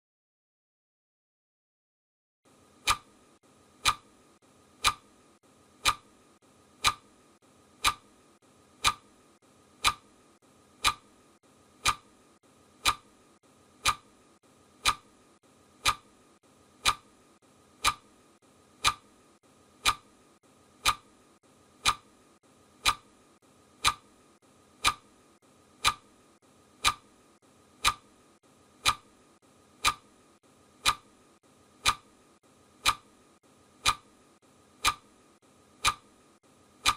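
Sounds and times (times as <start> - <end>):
faint steady hiss: 2.5 - 36.9
clock ticking: 2.8 - 4.2, 4.8 - 5.2, 5.8 - 7.2, 7.8 - 16.2, 16.8 - 18.2, 18.8 - 19.2, 19.8 - 20.2, 20.8 - 21.2, 21.8 - 22.2, 22.8 - 23.2, 23.8 - 24.2, 24.8 - 25.2, 25.8 - 30.2, 30.8 - 36.9.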